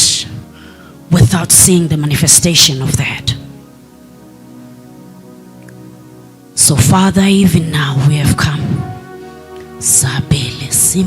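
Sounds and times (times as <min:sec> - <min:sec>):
soft keyboard pad chords: 0:00.0 - 0:11.0.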